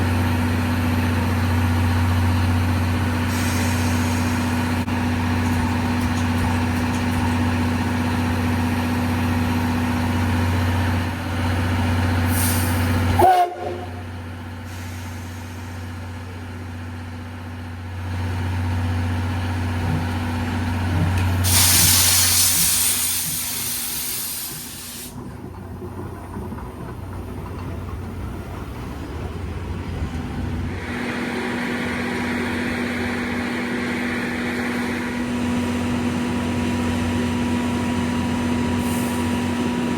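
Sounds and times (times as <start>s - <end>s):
loud hiss of steam: 3.2s - 4.9s, 12.2s - 13.4s, 14.6s - 16.3s, 21.4s - 25.3s.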